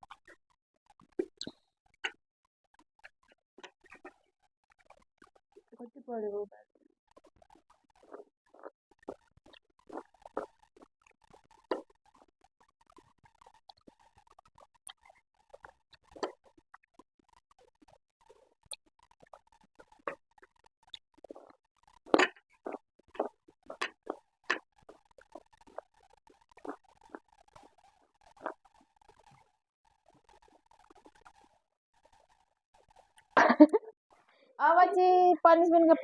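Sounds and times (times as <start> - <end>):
person chewing food: 7.1 - 29.5.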